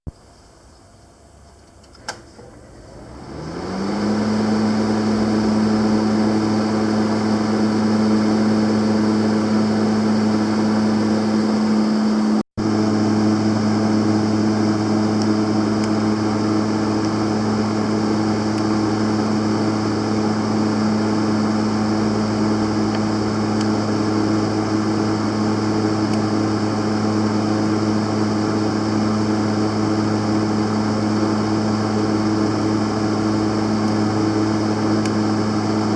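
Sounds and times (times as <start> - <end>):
cooling fan humming: 0.1 - 35.9
welder switch click: 35.0 - 35.2.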